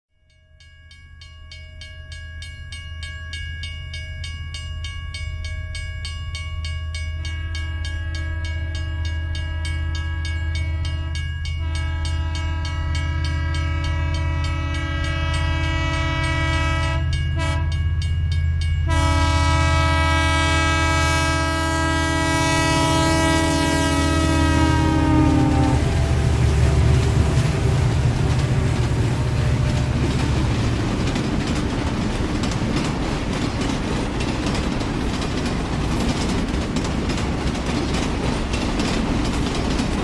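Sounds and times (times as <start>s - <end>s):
train rumble: 4.3s - 40.0s
train horn chord: 7.9s - 17.9s, 18.8s - 30.8s.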